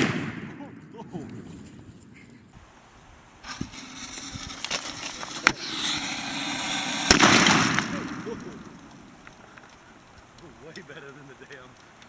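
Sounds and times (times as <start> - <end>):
firework bangs: 0.0 - 2.2, 3.4 - 11.6
crackling hiss: 0.0 - 12.0
firework fizzing and crackling: 2.6 - 12.0.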